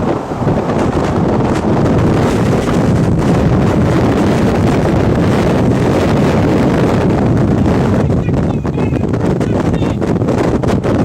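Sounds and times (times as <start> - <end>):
wind buffeting microphone: 0.0 - 11.0.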